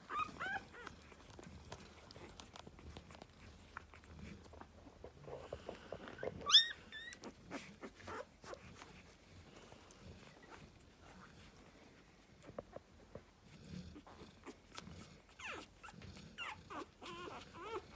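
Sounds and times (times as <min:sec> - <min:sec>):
puppies squealing: 0:00.0 - 0:00.9, 0:06.4 - 0:08.6, 0:15.4 - 0:17.9
rustling: 0:00.0 - 0:17.9.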